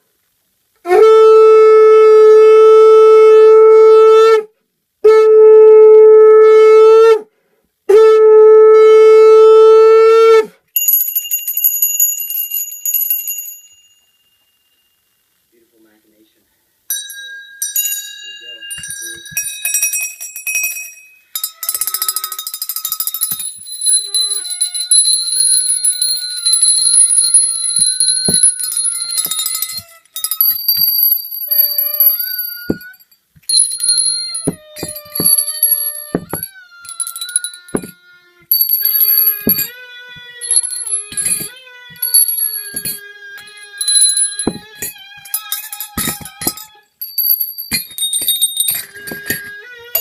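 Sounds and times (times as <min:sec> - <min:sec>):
wavering wind instrument notes: 0:00.9 - 0:07.2, 0:23.7 - 0:30.2
bells ringing in a high jangle: 0:10.8 - 0:15.2, 0:16.9 - 0:50.0.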